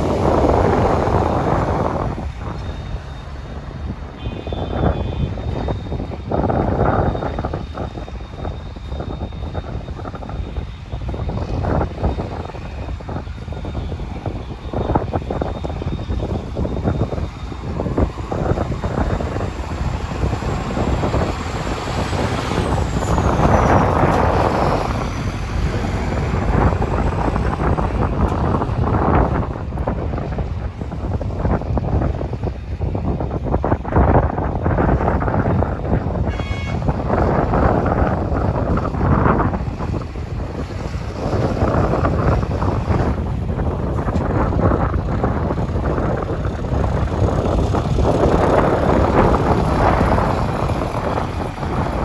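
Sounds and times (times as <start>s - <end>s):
rush of noise: 0.0s - 52.0s
vehicle and road rumble: 0.0s - 52.0s
wind buffeting microphone: 0.0s - 52.0s.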